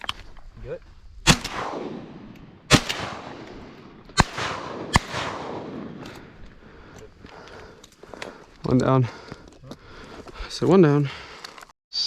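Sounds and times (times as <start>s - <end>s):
shotgun blasts: 1.2s - 6.4s
faint gunshot crack: 1.3s - 6.1s.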